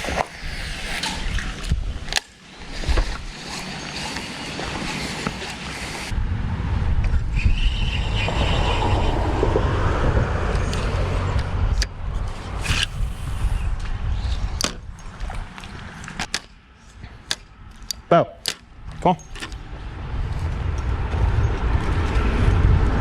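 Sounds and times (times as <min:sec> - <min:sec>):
road rumble inside car: 0:06.1 - 0:13.0
sharp clicks and knocks: 0:16.0 - 0:19.6.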